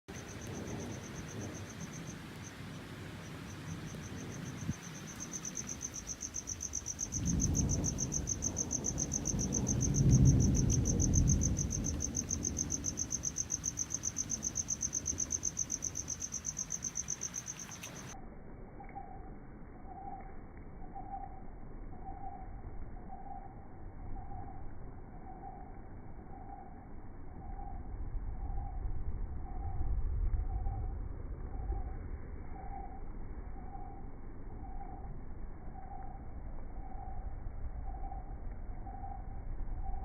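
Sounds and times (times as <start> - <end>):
crickets chirping: 0.1 - 18.2, 18.8 - 40.0
low rumble: 20.8 - 40.0.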